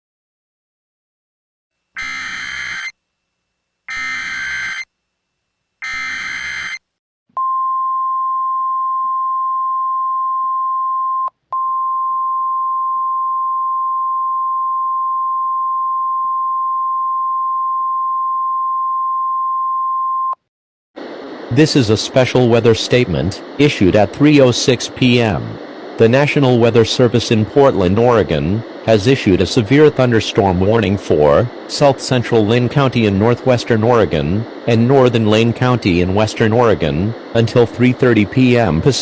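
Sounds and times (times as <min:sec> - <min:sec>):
buzzy digital data bursts: 0:02.0 - 0:03.0, 0:03.9 - 0:04.9, 0:05.8 - 0:06.8
steady alarm tone: 0:02.0 - 0:03.0, 0:03.9 - 0:04.9, 0:05.8 - 0:06.9.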